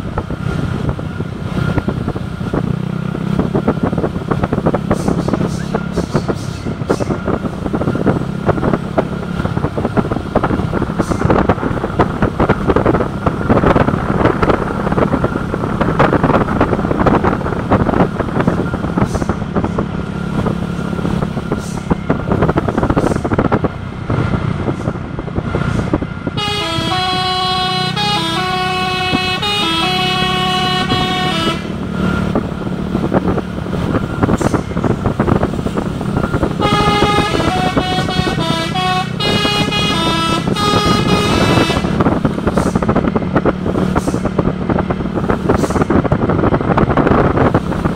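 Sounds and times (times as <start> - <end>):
heavy vehicle engine clattering: 0.0 - 47.9
multi-tone musical bus horn: 9.5 - 22.0, 26.2 - 32.4, 36.2 - 43.2.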